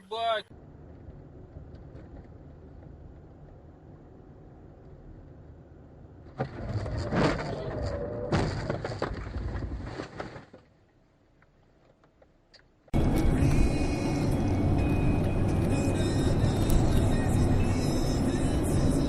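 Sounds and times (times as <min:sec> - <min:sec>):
car driving rumble: 0:00.0 - 0:19.0
car collision bangs and crunching: 0:06.3 - 0:10.7.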